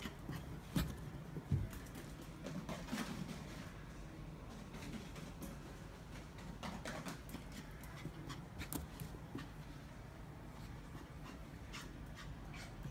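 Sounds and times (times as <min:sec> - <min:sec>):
puppy paws tapping: 0:04.5 - 0:09.6.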